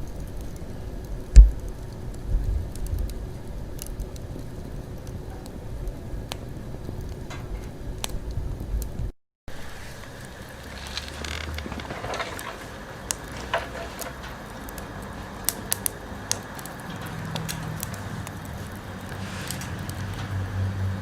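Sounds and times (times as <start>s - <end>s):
steady fire hiss: 0.0s - 21.0s
wood fire crackling and popping: 0.0s - 21.0s.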